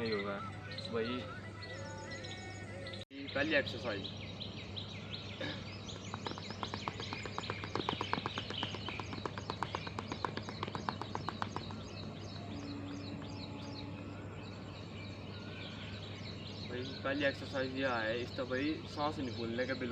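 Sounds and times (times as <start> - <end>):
background hum: 0.0 - 19.9
small birds chirping: 0.0 - 19.9
rapid short ticks: 5.9 - 11.9.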